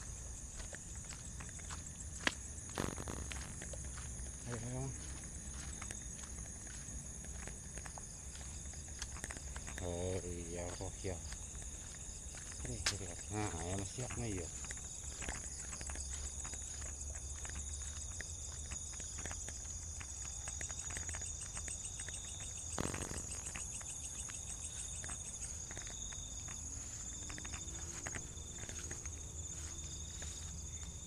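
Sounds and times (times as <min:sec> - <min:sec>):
crickets trilling: 0:00.0 - 0:31.0
insect low pulsing calls: 0:00.0 - 0:31.0
small clicks and crunches: 0:02.2 - 0:03.9, 0:12.6 - 0:29.2.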